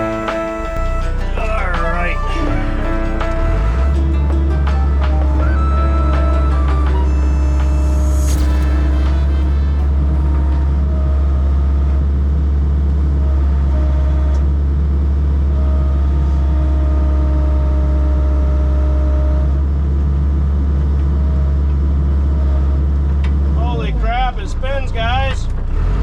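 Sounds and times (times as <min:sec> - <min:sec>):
diesel engine humming: 0:00.0 - 0:26.0.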